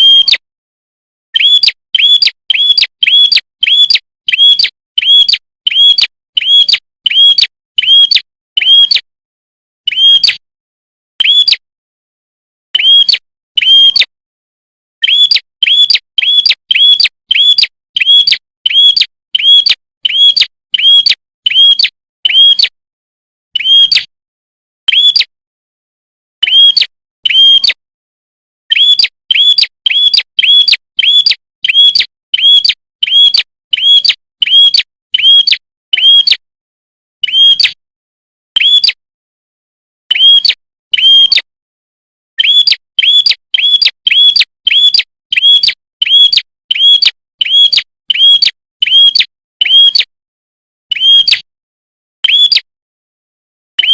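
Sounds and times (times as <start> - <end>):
songbird chirping rapidly: 1.4 - 9.0, 15.0 - 22.6, 24.9 - 25.3, 28.7 - 36.2, 38.6 - 39.0, 42.4 - 50.0.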